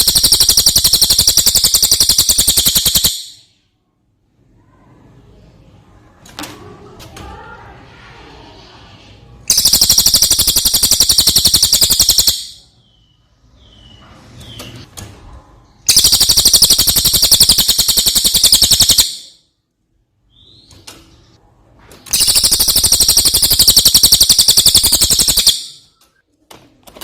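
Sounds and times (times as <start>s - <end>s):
bird rattling trills: 0.0s - 3.4s, 9.5s - 12.6s, 15.9s - 19.3s, 22.1s - 25.8s.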